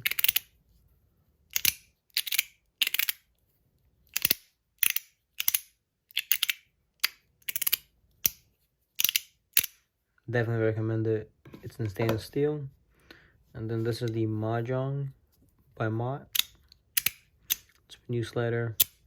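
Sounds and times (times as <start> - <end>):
metal slider fidget clicking: 1.5 - 3.2, 4.1 - 8.4.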